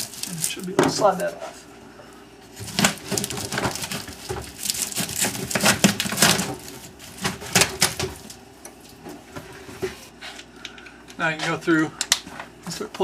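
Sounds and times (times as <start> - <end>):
hose crinkling and rustling: 0.0 - 1.7, 2.4 - 10.2.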